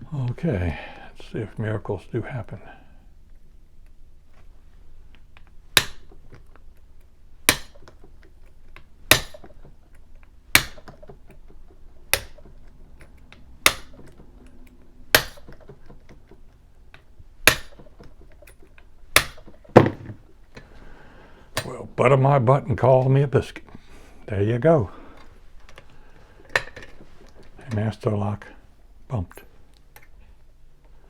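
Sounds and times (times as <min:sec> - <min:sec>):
mallet tapping key in padlock: 0:07.4 - 0:08.0, 0:09.1 - 0:09.8, 0:10.5 - 0:11.5, 0:12.1 - 0:14.2, 0:15.1 - 0:15.8, 0:17.4 - 0:19.8.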